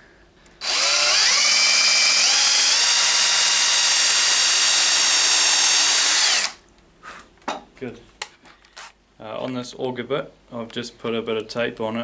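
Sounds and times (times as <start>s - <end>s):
electric drill drilling into wood: 0.6s - 6.6s.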